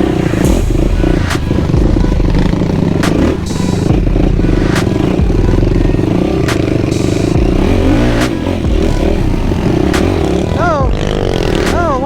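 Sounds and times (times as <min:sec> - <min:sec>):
atv engine under throttle: 0:00.0 - 0:12.0
sharp knocks over bumps: 0:02.9 - 0:05.5.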